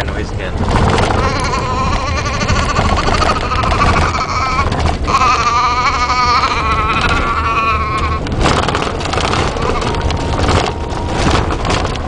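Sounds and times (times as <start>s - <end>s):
off-road vehicle rumble: 0.0s - 12.0s
child making wavering vocal noise: 1.0s - 8.3s.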